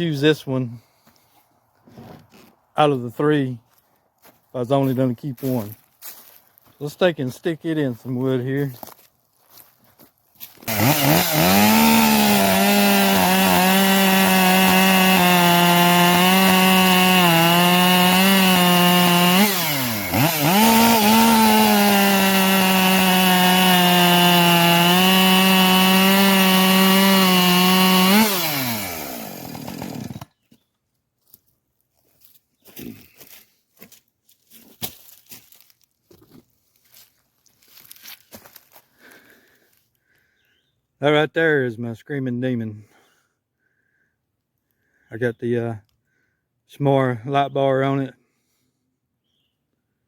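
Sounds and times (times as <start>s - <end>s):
chainsaw cutting wood: 10.6s - 30.4s.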